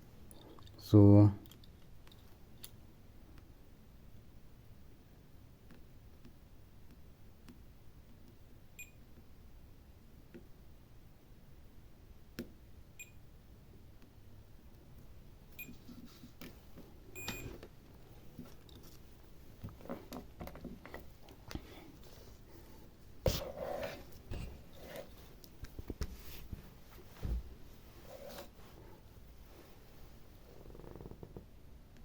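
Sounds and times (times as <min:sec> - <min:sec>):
multimeter beeps: 0:08.8 - 0:09.1, 0:13.0 - 0:13.2, 0:15.6 - 0:15.8, 0:17.2 - 0:17.6.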